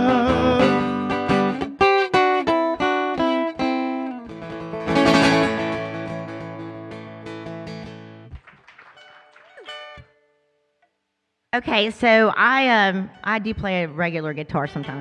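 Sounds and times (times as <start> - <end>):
mandolin picked notes and chord: 0.0 - 8.3.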